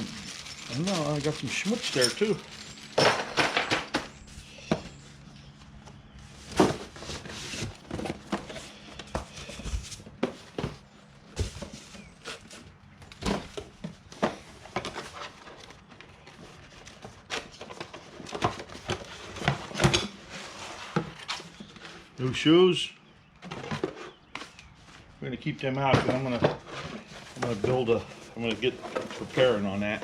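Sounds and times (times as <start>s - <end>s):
packaging rustling: 0.0s - 4.1s.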